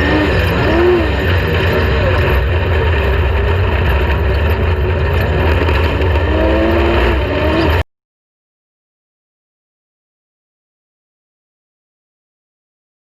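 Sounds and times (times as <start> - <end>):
road noise: 0.0 - 7.8
engine and drivetrain rumble: 0.0 - 7.9.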